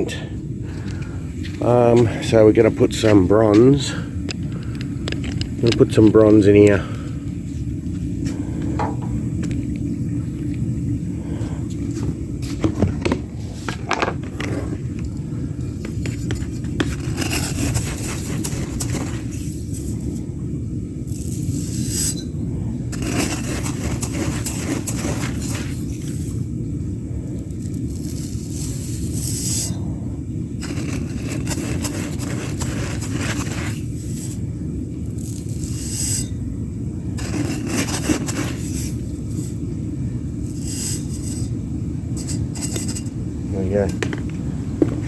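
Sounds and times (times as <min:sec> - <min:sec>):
furnace burner roar: 0:00.0 - 0:45.0
scrap metal scraping and clinking: 0:15.8 - 0:20.3, 0:21.1 - 0:26.4, 0:30.6 - 0:34.4, 0:35.2 - 0:36.4, 0:37.2 - 0:39.6, 0:40.4 - 0:44.4
metallic clinks and scrapes: 0:21.1 - 0:26.4, 0:40.4 - 0:41.6, 0:42.2 - 0:43.2.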